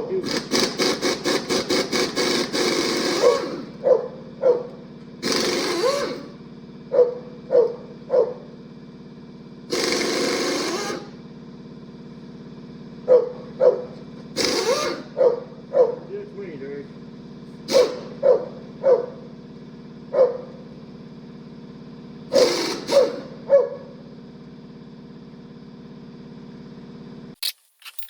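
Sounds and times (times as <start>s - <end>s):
impact wrench: 0.2s - 3.8s, 5.2s - 6.4s, 9.7s - 11.2s, 14.3s - 15.2s, 17.7s - 18.4s, 22.3s - 23.4s
dog barking: 3.2s - 4.7s, 6.9s - 8.4s, 13.1s - 13.9s, 15.2s - 16.1s, 18.2s - 19.2s, 20.1s - 20.5s, 23.0s - 23.9s.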